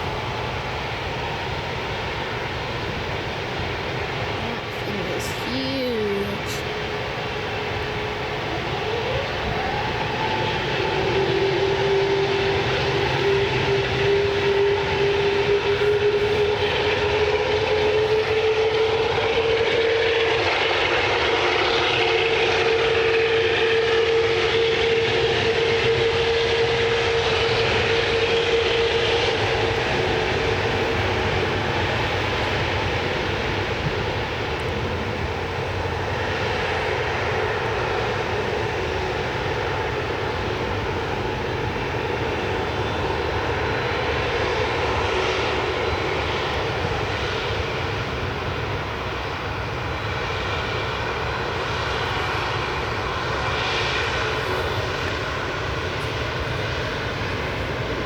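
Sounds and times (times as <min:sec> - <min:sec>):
airliner engines roaring: 0:00.0 - 0:58.0
rising engine whine: 0:00.1 - 0:58.0.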